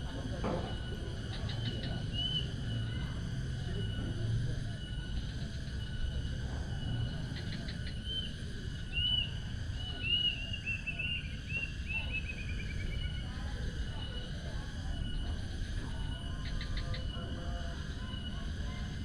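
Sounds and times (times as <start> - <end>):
insect drone: 0.0 - 19.0
bird whistling calls: 0.7 - 3.1, 7.4 - 13.3.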